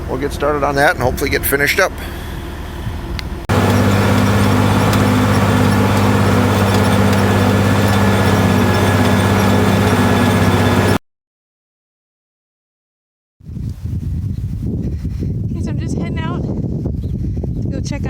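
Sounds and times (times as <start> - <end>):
tractor engine droning: 1.9 - 11.0.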